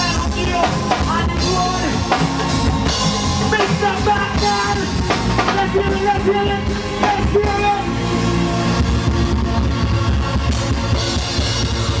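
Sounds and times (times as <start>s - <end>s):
person singing: 0.0s - 8.0s
bass: 0.0s - 12.0s
drum kit: 0.0s - 12.0s.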